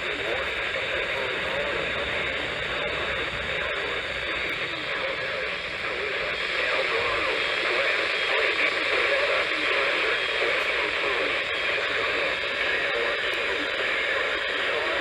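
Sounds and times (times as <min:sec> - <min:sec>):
faint broadcast voice: 0:00.0 - 0:15.0
radio static hiss: 0:00.0 - 0:15.0.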